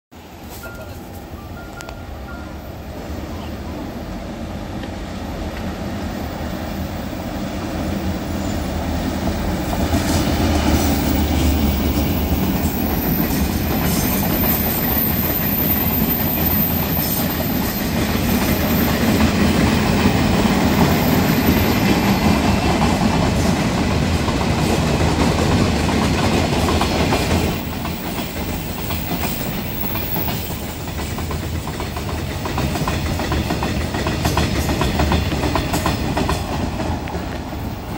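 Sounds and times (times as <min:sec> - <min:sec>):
train rumbling: 0:00.2 - 0:37.9
wheels clacking over rail joints: 0:09.7 - 0:37.9.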